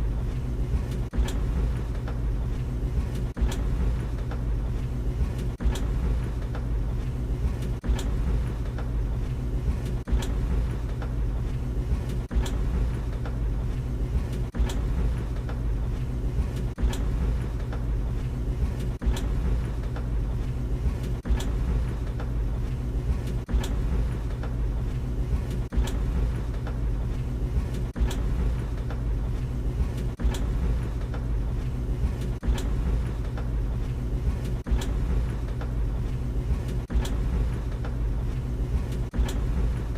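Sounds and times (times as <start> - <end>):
dryer drum knocking: 0.0 - 39.9
tumble dryer humming: 0.0 - 39.9.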